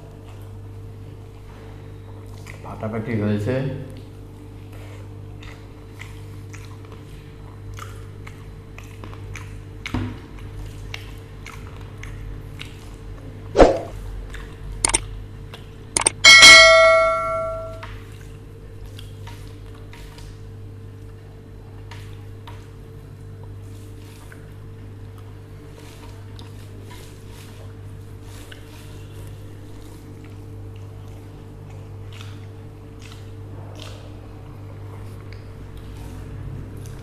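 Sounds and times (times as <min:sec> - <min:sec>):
steady low hum: 0:12.9 - 0:18.0
faint eating clicks: 0:14.3 - 0:16.2
clinks: 0:16.0 - 0:17.8
metal dish ringing like a bell: 0:16.2 - 0:17.8.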